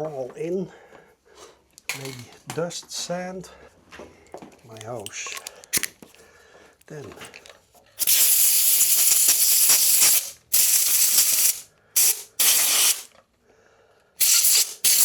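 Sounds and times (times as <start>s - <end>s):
compressed air hissing bursts: 8.0s - 13.1s, 14.2s - 15.0s.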